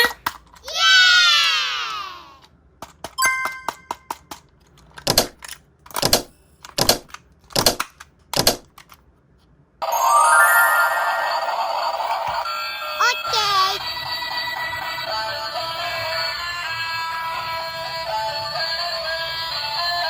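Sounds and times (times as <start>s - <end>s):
brief ding: 3.2s - 4.1s
music: 9.8s - 20.0s.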